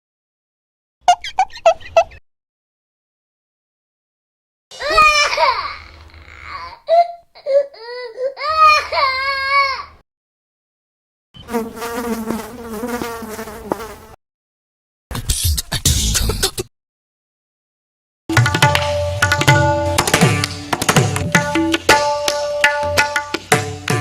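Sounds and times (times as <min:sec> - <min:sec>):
comic whining cries: 0:04.7 - 0:10.0.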